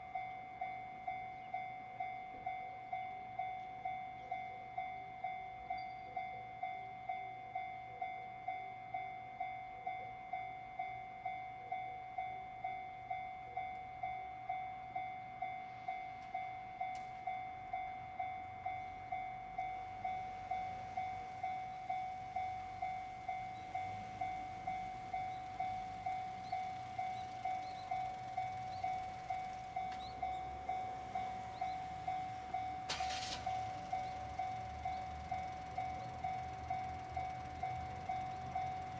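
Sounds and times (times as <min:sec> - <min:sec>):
level crossing warning bell: 0:00.0 - 0:38.9
train rumble: 0:13.0 - 0:38.9.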